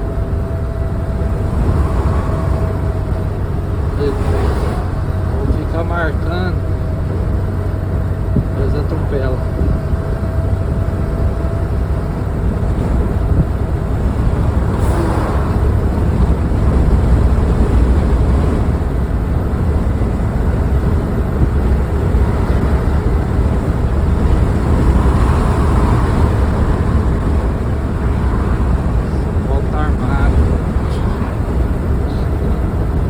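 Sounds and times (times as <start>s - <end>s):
vehicle road noise at speed: 0.0s - 33.0s
wind buffeting microphone: 0.0s - 33.0s.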